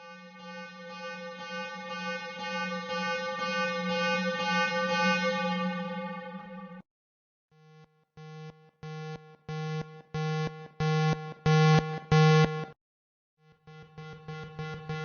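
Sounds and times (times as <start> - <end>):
pulsed electronic warning siren: 0.0 - 6.8, 13.7 - 15.0.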